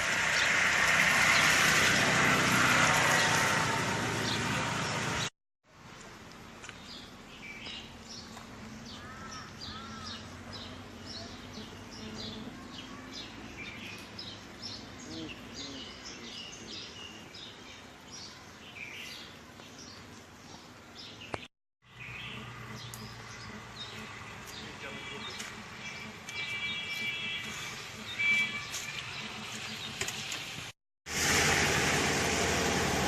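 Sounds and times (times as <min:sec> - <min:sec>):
small birds chirping: 0:06.6 - 0:30.4.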